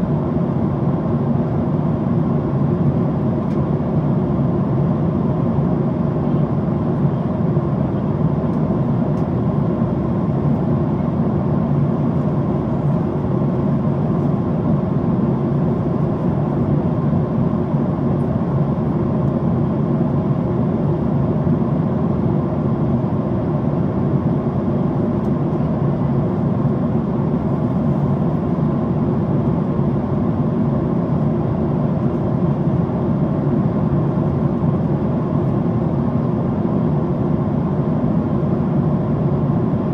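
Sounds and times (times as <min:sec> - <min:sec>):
airplane cabin rushing hum: 0:00.1 - 0:39.9.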